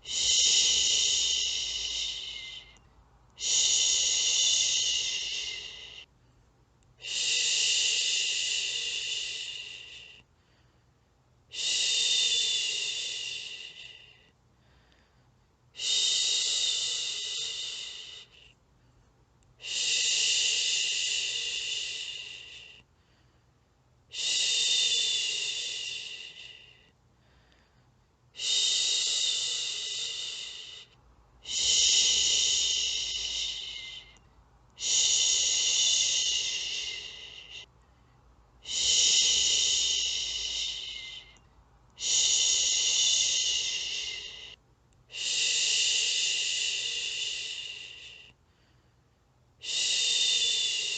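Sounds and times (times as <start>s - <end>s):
person shushing: 0.0s - 2.8s, 3.4s - 6.0s, 31.4s - 34.2s, 34.8s - 37.7s, 38.6s - 41.4s, 42.0s - 48.2s.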